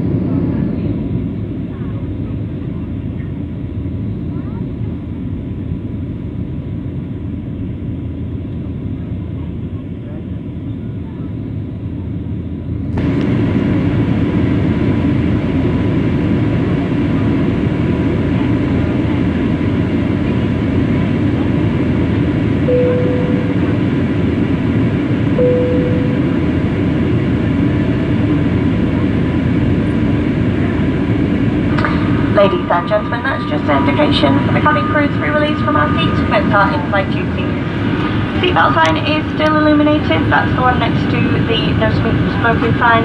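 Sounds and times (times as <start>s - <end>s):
jet engines roaring: 0.0s - 43.0s
single-pitch chime tones: 22.7s - 23.7s, 25.4s - 26.4s
rushing air: 31.4s - 33.7s, 37.3s - 38.5s.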